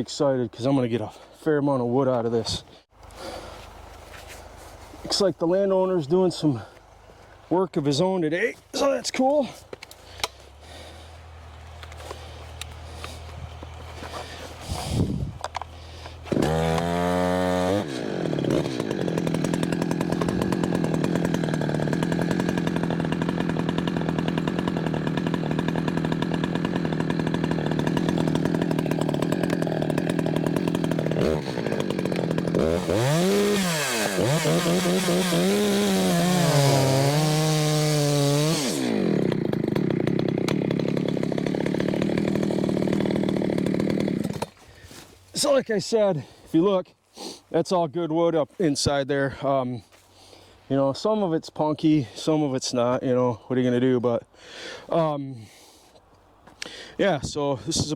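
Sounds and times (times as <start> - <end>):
chainsaw cutting wood: 9.6 - 45.2.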